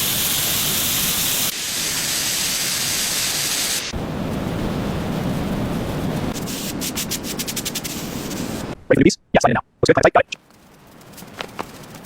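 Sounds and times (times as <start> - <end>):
loud steady hiss: 0.0 - 8.8.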